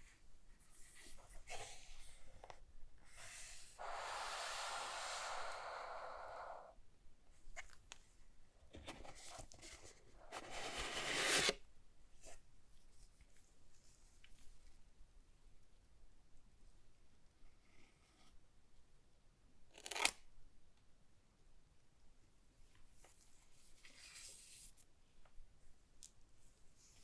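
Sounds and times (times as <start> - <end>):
cardboard scraping slide: 10.3 - 11.5.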